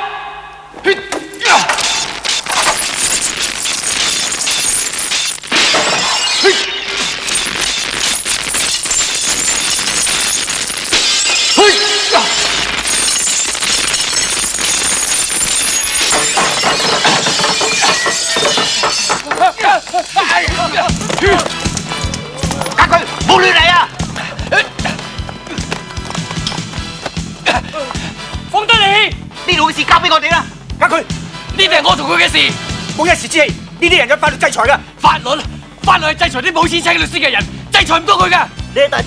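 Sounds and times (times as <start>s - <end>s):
glass shattering: 1.3s - 23.6s, 25.8s - 26.8s.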